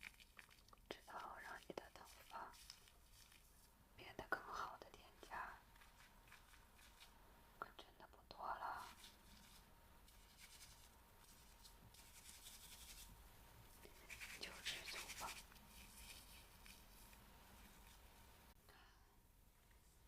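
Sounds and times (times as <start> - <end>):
faint scratching close to microphone: 1.0 - 3.8, 8.6 - 13.2, 13.8 - 18.2.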